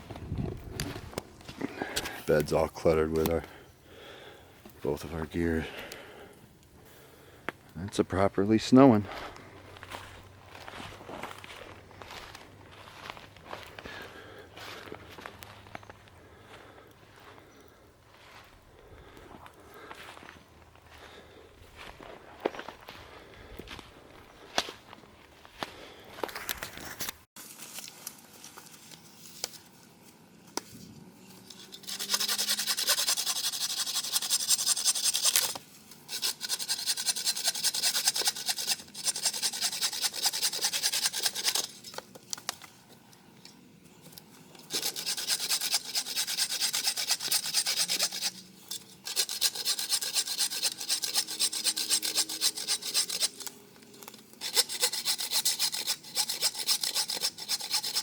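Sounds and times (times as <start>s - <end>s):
hand saw cutting wood: 31.5s - 42.0s, 44.6s - 58.0s.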